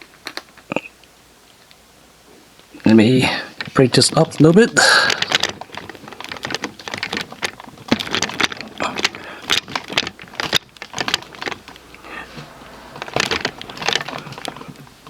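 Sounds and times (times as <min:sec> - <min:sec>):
plastic toy parts clicking: 0:03.6 - 0:14.9.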